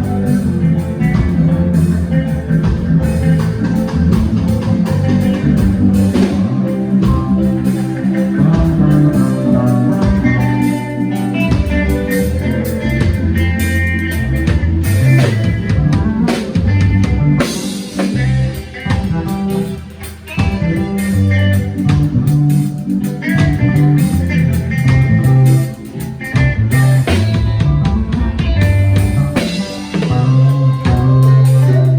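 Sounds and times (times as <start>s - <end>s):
band playing instrumental music: 0.0s - 31.9s.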